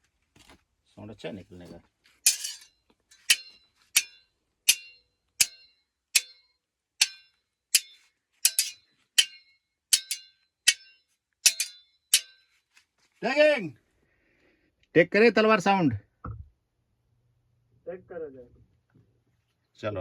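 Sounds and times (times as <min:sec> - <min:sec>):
metal swords clinking: 0:02.2 - 0:12.5.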